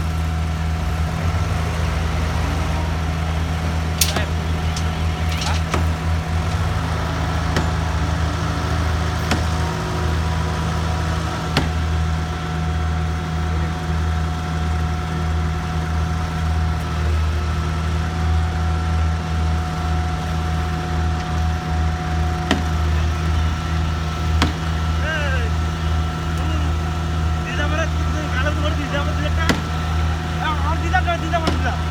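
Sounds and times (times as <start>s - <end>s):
engine running with low drone: 0.0s - 31.9s
sharp knocks: 4.0s - 6.0s.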